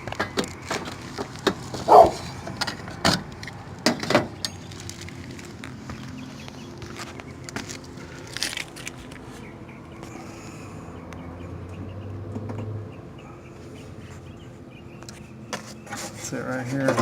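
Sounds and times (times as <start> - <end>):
handling clicks and rustles: 0.0 - 9.5.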